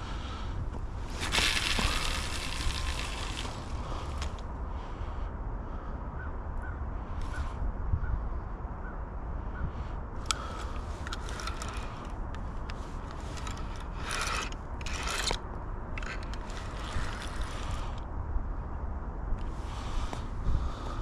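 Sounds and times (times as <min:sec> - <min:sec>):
wind rumble on microphone: 0:00.0 - 0:21.0
scraping rasps: 0:00.7 - 0:04.4, 0:10.2 - 0:18.0
fishing reel clicking: 0:01.2 - 0:04.4, 0:10.2 - 0:15.4, 0:16.0 - 0:18.0.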